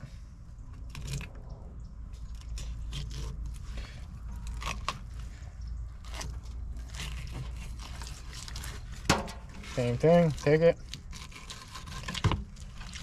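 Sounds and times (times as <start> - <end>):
low hum: 0.0 - 10.1
knife scraping and cutting fish: 0.8 - 1.3, 2.2 - 5.2, 6.0 - 13.0.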